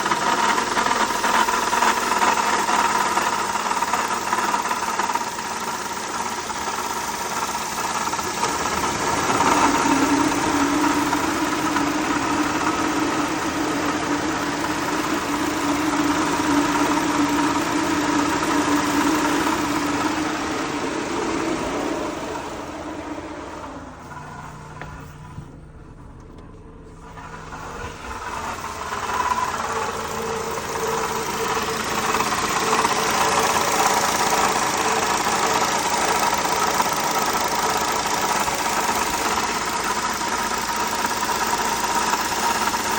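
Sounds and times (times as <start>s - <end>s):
car engine idling with rattle: 0.0s - 42.9s
steady low tone: 8.7s - 33.0s.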